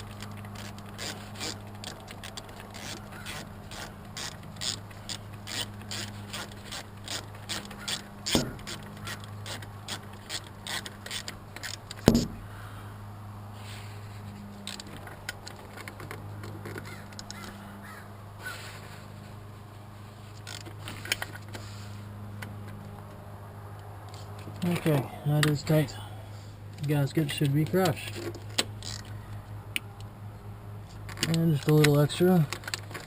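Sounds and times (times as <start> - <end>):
ratchet wrench clicking: 0.2 - 12.3, 28.2 - 29.2
metal knocks: 8.3 - 8.8, 12.0 - 12.5.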